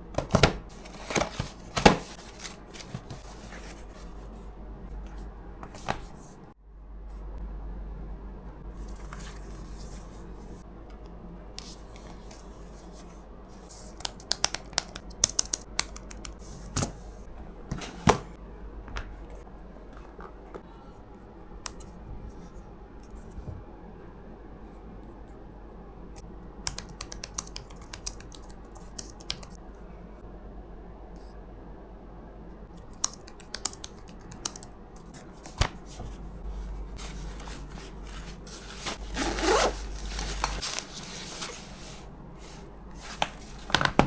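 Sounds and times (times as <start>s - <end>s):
steady low hum: 0.0s - 14.0s, 15.0s - 26.6s, 34.0s - 44.0s
keyboard clicks: 26.7s - 29.5s, 32.9s - 34.7s.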